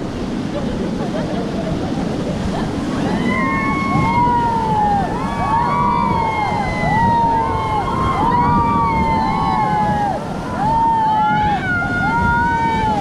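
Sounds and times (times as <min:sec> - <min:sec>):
rushing water: 0:00.0 - 0:13.0
crew shouting and whooping: 0:03.0 - 0:13.0.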